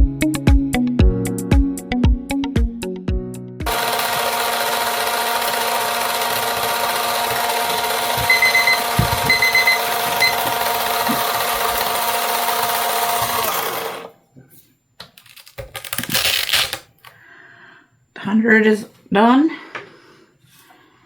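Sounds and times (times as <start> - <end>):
electric sander running: 3.7 - 14.1
kitchen timer beeping: 4.0 - 12.9.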